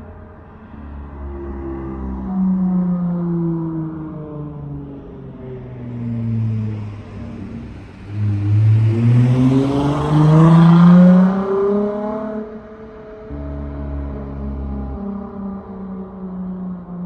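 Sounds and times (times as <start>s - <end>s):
car exhaust accelerating: 5.9s - 17.0s.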